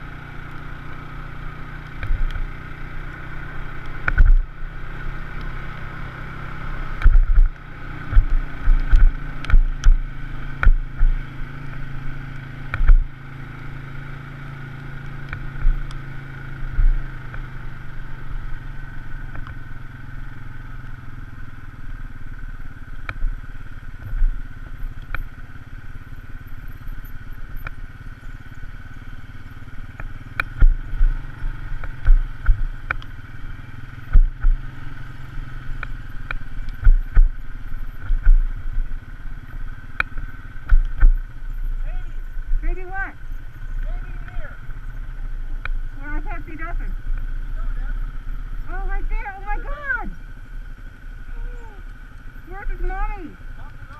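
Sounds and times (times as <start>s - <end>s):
off-road vehicle engine running: 0.0s - 53.9s
vehicle thumping over rough ground: 7.0s - 11.3s, 12.7s - 13.2s, 30.0s - 33.0s, 33.9s - 34.8s, 35.8s - 41.8s.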